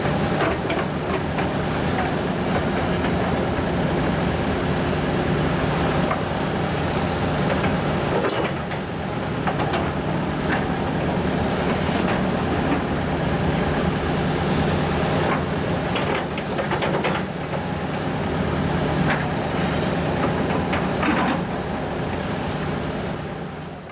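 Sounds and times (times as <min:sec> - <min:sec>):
excavator bucket clanking and scraping: 0:00.0 - 0:03.8, 0:07.4 - 0:13.5, 0:15.2 - 0:17.7, 0:18.9 - 0:21.7
excavator diesel engine running: 0:00.0 - 0:23.9.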